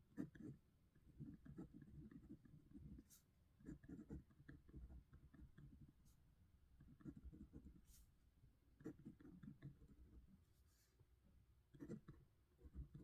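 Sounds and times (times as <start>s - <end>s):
pen scratching on paper: 3.0s - 4.4s, 6.9s - 8.1s, 8.8s - 10.1s, 11.8s - 13.0s.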